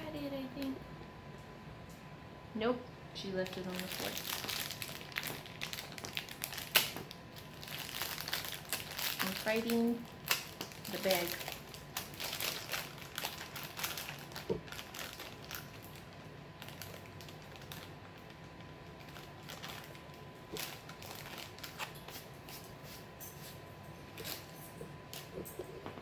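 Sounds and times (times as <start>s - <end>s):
plastic bag crinkling: 3.4s - 23.1s.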